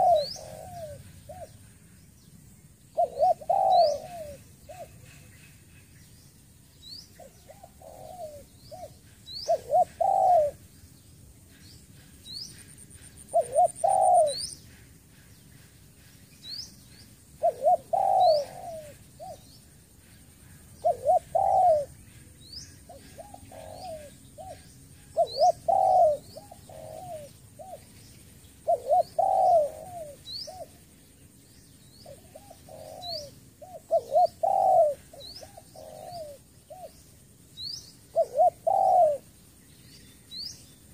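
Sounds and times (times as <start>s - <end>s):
dove cooing: 0.0s - 1.7s, 2.9s - 5.3s, 7.2s - 10.7s, 13.2s - 14.5s, 17.4s - 19.6s, 20.6s - 22.0s, 22.8s - 27.9s, 28.6s - 30.8s, 32.0s - 37.1s, 38.1s - 39.3s
small bird chirping: 0.0s - 40.9s.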